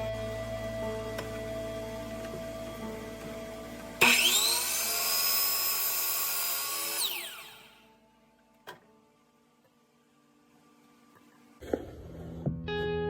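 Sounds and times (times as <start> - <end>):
electric power tool motor: 3.4 - 8.0.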